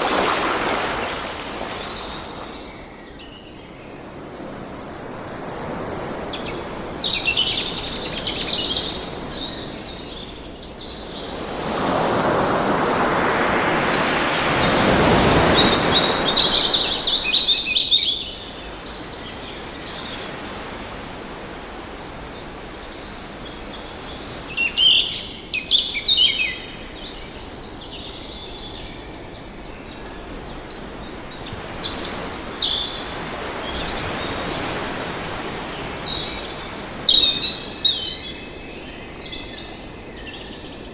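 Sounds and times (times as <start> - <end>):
wave breaking: 0.0 - 2.4, 11.4 - 17.2
ocean waves: 0.0 - 3.0, 3.9 - 23.4, 30.3 - 40.9
songbirds chirping and singing: 22.3 - 40.9.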